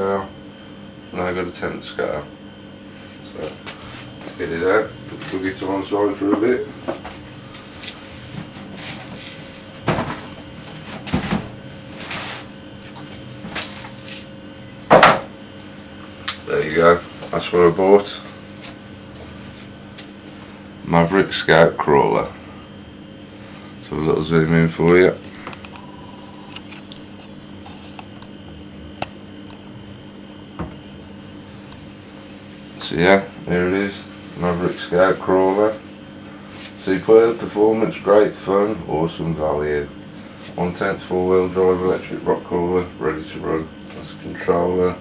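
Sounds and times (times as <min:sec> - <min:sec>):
low electrical hum: 0:00.0 - 0:45.0
faint high whine: 0:02.9 - 0:08.2, 0:08.8 - 0:35.8.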